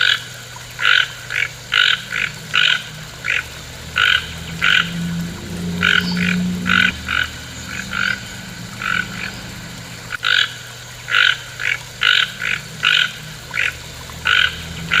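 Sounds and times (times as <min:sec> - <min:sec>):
frog croaking: 0:00.8 - 0:15.0
steady low hum: 0:01.2 - 0:10.2.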